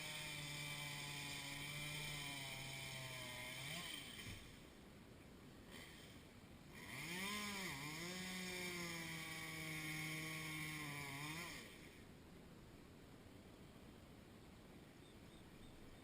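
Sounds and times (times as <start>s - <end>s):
chainsaw engine revving: 0.0s - 4.6s, 5.7s - 12.0s.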